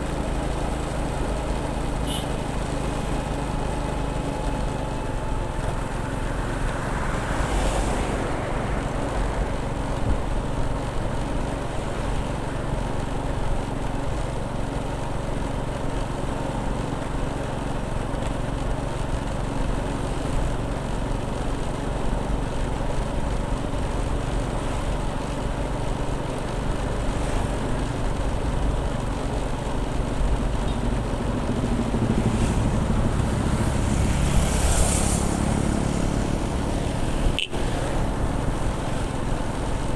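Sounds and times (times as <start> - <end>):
motorcycle engine running: 0.0 - 39.9
wind and road noise: 0.0 - 39.9.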